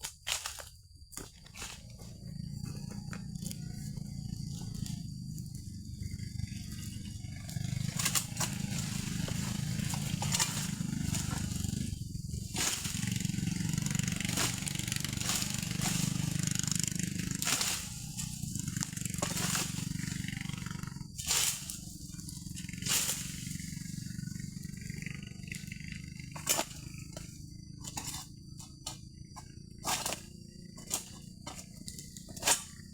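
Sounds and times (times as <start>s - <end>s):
pole sickle cutting palm fronds: 0.0s - 5.6s, 6.7s - 32.9s
steady low rumble: 0.8s - 16.4s.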